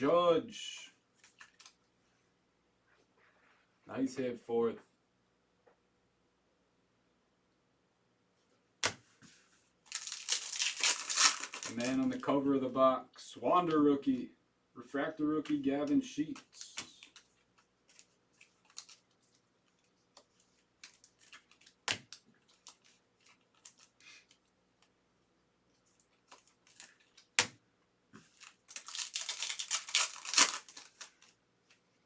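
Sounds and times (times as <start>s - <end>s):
wrapper tearing and crinkling: 9.9s - 12.2s, 16.3s - 19.4s, 20.8s - 24.3s, 26.0s - 27.3s, 28.3s - 31.4s.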